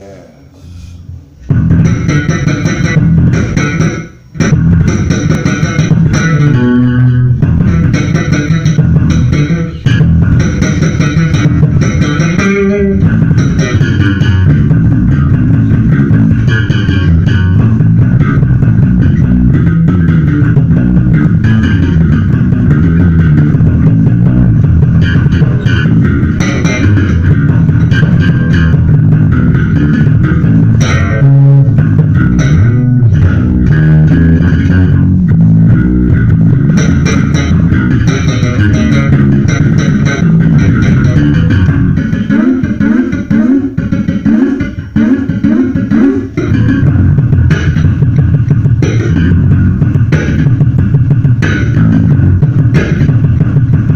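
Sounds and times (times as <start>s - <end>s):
slap bass guitar groove: 1.0s - 53.9s.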